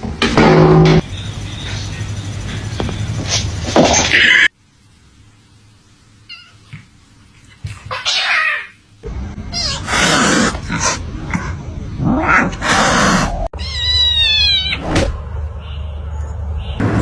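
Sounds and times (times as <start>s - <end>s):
harsh cat yowls: 12.1s - 14.8s
cat meowing: 12.2s - 14.8s.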